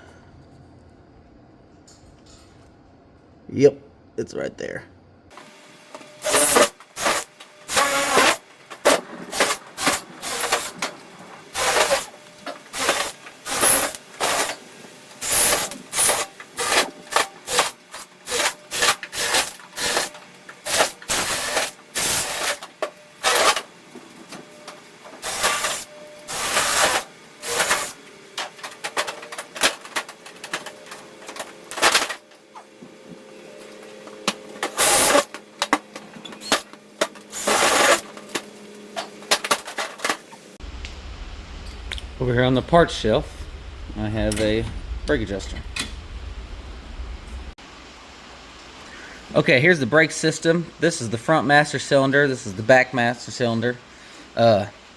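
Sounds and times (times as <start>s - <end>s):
scraping and clattering handling noises: 25.2s - 40.4s
faint steady hum: 40.6s - 54.8s.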